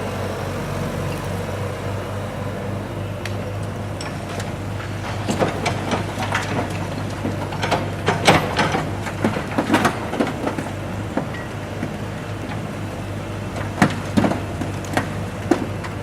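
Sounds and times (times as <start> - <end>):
diesel loader engine running: 0.0 - 16.0
debris clanking and clattering: 3.9 - 12.7, 13.5 - 16.0.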